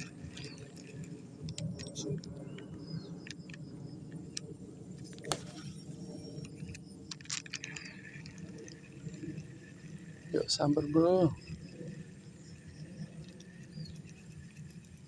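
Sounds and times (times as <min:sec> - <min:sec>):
fishing tackle clicks and rattles: 0:00.0 - 0:15.0
low steady rumble: 0:00.0 - 0:15.0.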